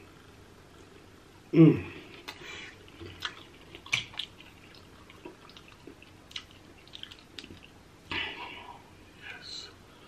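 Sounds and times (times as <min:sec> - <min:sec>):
wet chewing and lip smacking: 0:02.2 - 0:07.8.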